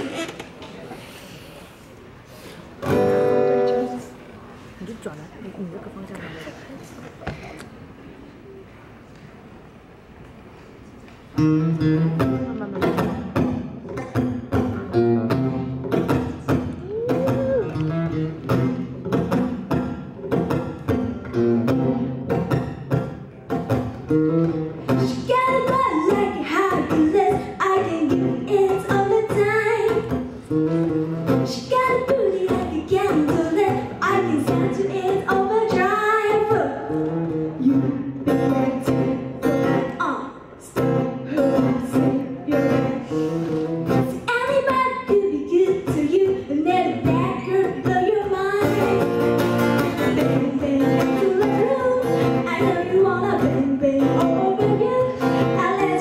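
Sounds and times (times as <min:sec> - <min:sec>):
guitar accompaniment: 0:02.3 - 0:04.7, 0:10.1 - 0:56.0
person singing: 0:40.7 - 0:43.7.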